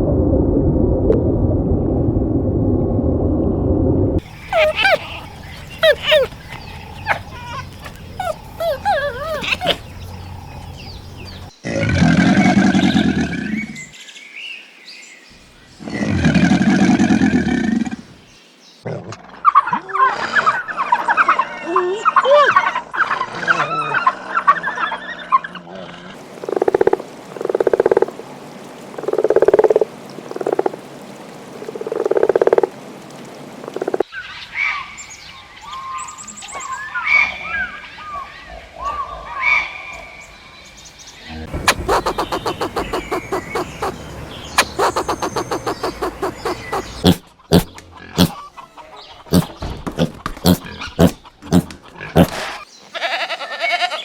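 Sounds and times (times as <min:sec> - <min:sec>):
animal calls: 0:04.2 - 0:11.6, 0:41.3 - 0:54.0.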